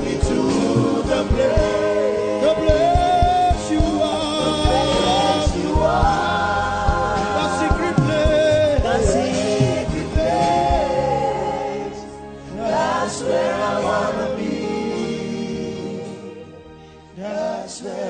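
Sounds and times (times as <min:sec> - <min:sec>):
steady drum beat: 0:00.0 - 0:11.0
voices singing gospel: 0:00.0 - 0:18.0.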